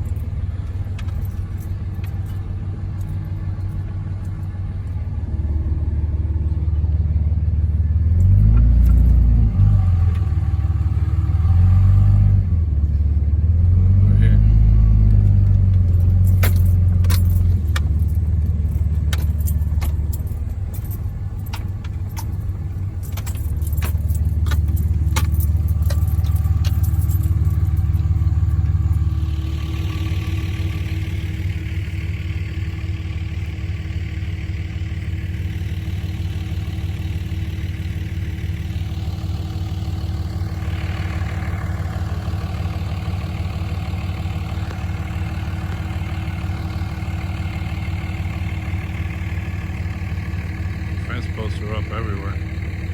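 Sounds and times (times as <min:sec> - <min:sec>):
vehicle engine running: 0:00.0 - 0:52.9
sharp rattles and clicks: 0:15.1 - 0:31.9.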